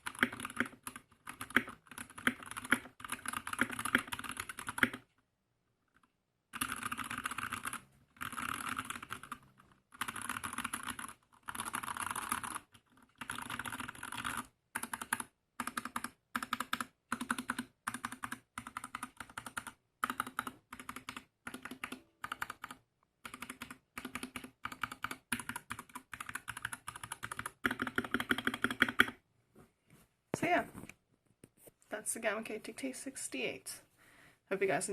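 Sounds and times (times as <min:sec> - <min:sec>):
mechanical keyboard typing: 0:00.0 - 0:05.1, 0:06.5 - 0:29.2.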